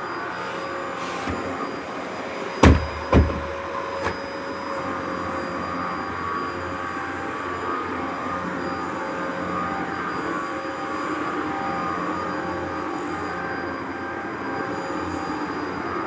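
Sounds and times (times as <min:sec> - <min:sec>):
vacuum cleaner running: 0:00.0 - 0:16.0
loud thumps: 0:02.6 - 0:04.2.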